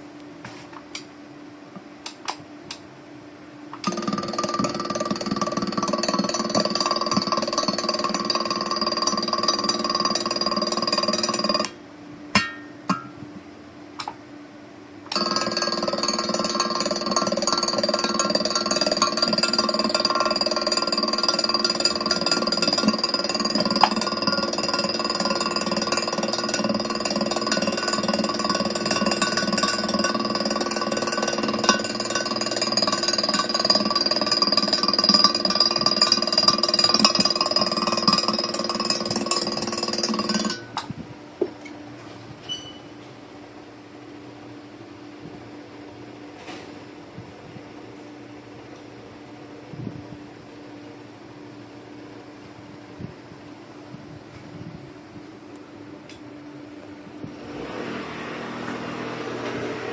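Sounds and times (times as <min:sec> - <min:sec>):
welding machine buzzing: 0:03.8 - 0:11.8, 0:15.1 - 0:40.9.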